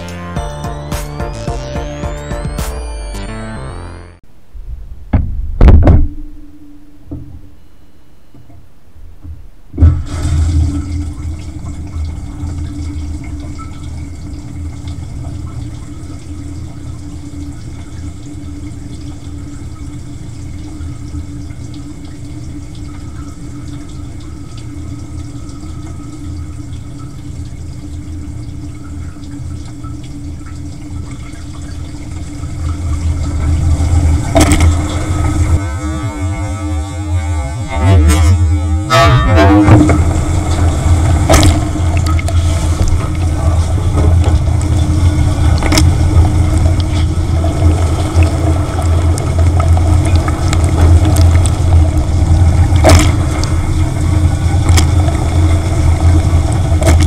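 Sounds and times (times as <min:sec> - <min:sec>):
water filling and sloshing: 0:09.2 - 0:36.3, 0:39.6 - 0:57.0
dishwasher pump hum: 0:39.6 - 0:57.0.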